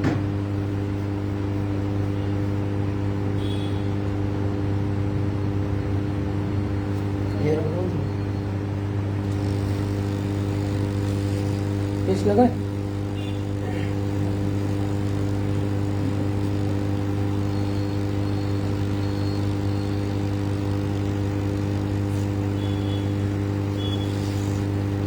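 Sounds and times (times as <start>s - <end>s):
hot-air blower humming: 8.7s - 25.0s.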